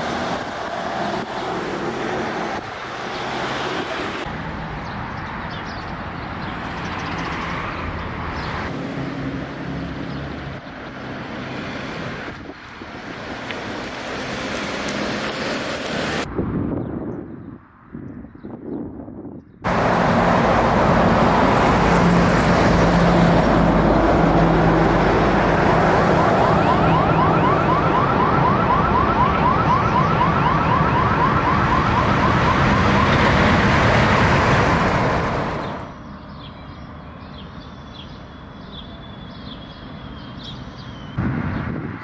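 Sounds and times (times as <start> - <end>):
dense rushing noise: 19.7 - 28.2, 30.9 - 36.0
siren yelping: 25.4 - 34.2.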